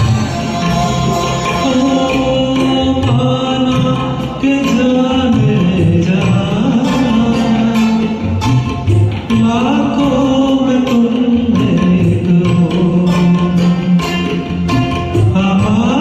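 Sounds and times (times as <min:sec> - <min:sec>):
orchestral accompaniment: 0:00.0 - 0:03.7
gliding melody line: 0:00.0 - 0:16.0.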